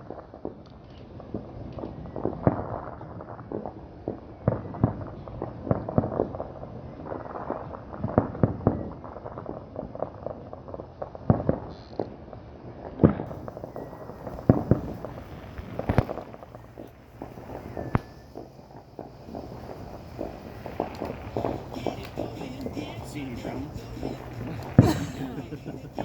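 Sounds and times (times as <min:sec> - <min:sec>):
fireworks booming and banging: 0:13.1 - 0:26.0.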